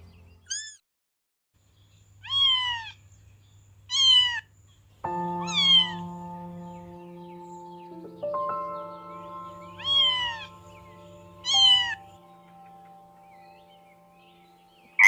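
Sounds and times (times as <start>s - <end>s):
cat meowing: 0.5s - 0.8s, 2.2s - 3.0s, 3.9s - 4.5s, 5.4s - 6.1s, 9.8s - 10.5s, 11.4s - 12.0s
background music: 5.1s - 15.0s.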